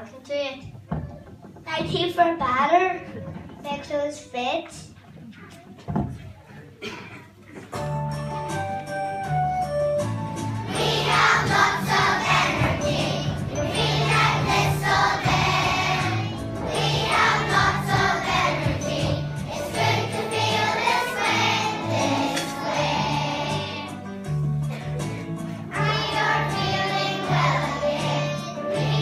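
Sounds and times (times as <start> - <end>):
instrumental backing music: 7.3 - 29.0
children singing together: 10.6 - 24.1, 25.7 - 29.0.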